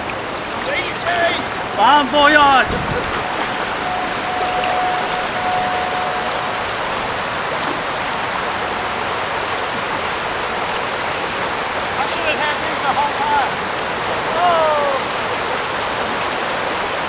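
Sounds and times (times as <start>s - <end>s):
thin steady tone: 0.7s - 11.8s.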